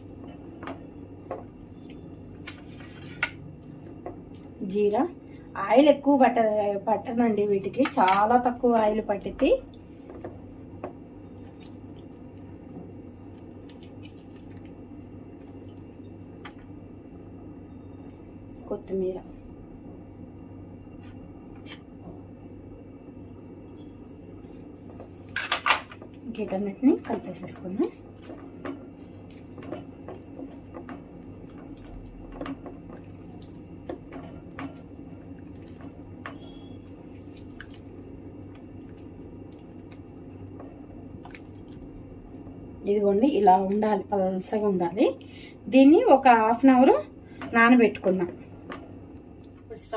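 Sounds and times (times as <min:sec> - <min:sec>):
steady low hum: 0:00.0 - 0:49.9
batter squishing: 0:27.1 - 0:44.0.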